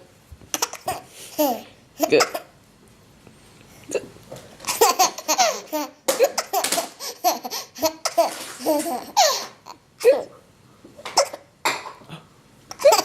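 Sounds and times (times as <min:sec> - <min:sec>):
baby laughing: 0:00.5 - 0:02.5, 0:04.6 - 0:10.3, 0:11.0 - 0:11.5, 0:12.7 - 0:13.0.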